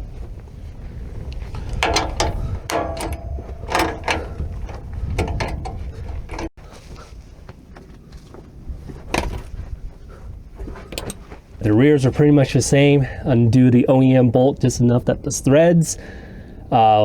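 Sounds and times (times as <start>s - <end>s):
metal clinking: 1.5s - 6.5s, 11.0s - 11.2s
ratchet wrench clicking: 1.7s - 6.5s.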